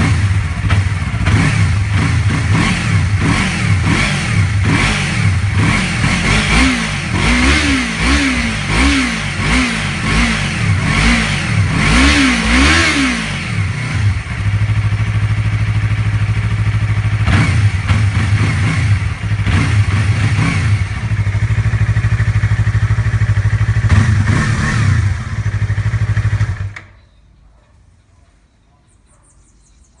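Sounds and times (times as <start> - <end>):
motorcycle engine revving and idling: 0.0 - 27.0.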